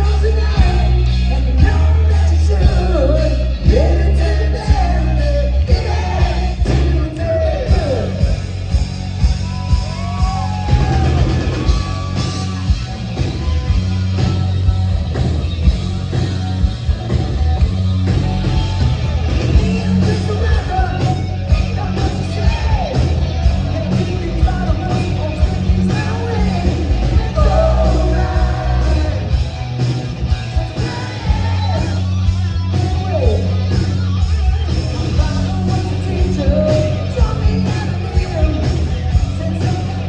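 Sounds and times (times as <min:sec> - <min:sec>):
man singing: 0:00.0 - 0:08.5, 0:19.5 - 0:29.4, 0:30.5 - 0:32.1, 0:35.0 - 0:40.0
live hard rock band: 0:00.0 - 0:40.0.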